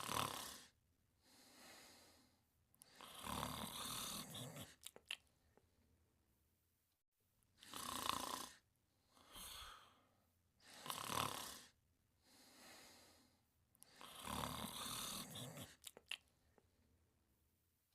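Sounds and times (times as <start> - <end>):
cartoon character snoring: 0.0 - 0.8, 2.8 - 4.8, 7.6 - 8.6, 10.6 - 11.8, 13.9 - 15.9
soft breath: 1.2 - 3.2, 8.9 - 11.0, 11.6 - 14.2.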